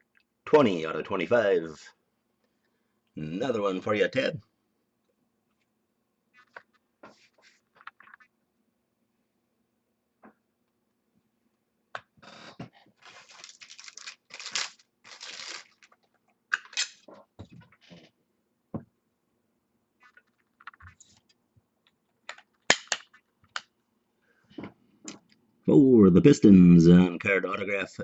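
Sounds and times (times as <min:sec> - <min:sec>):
cards clicking and scraping: 0:06.4 - 0:08.3, 0:13.0 - 0:17.0
plastic and paper wrap tearing: 0:13.0 - 0:16.0.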